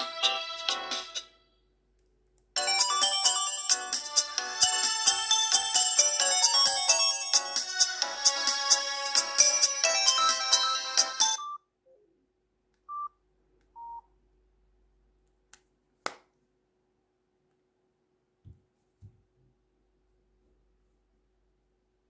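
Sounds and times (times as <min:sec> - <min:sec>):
mobile phone ringtone melody: 0:02.6 - 0:08.5, 0:09.1 - 0:11.6.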